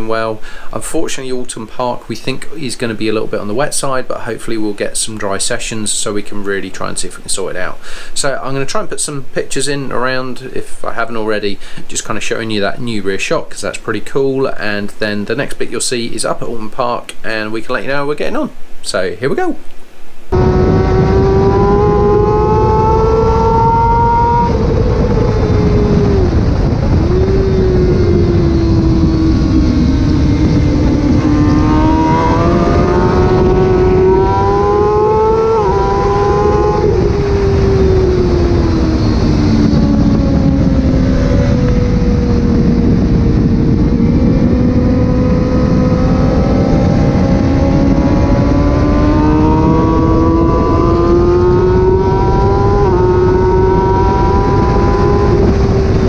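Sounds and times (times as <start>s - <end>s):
steady rushing noise: 0.0s - 56.0s
motorcycle engine revving: 20.3s - 56.0s.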